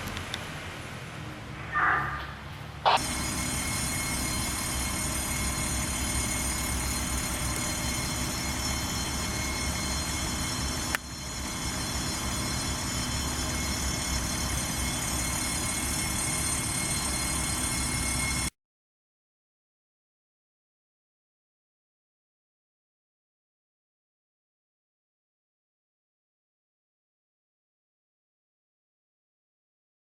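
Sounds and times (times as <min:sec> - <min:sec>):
fire engine rumbling: 0:00.0 - 0:18.5.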